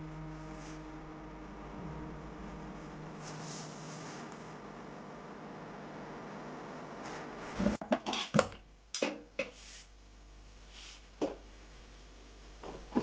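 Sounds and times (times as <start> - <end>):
steady low hiss: 0.0 - 7.6.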